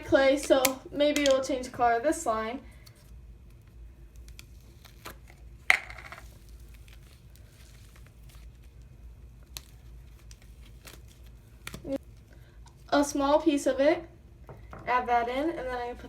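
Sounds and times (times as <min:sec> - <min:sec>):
wrapper crinkling: 0:04.3 - 0:12.3.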